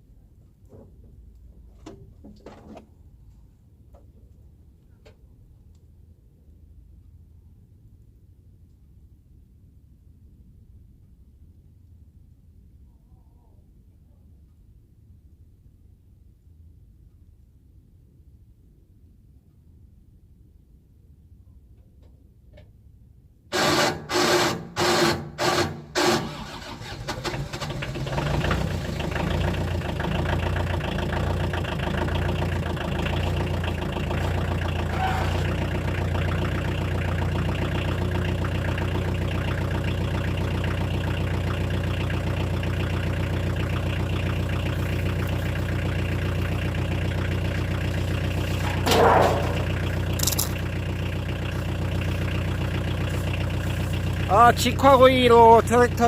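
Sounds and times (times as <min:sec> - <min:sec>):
diesel engine cranking and idling: 0:23.5 - 0:56.0.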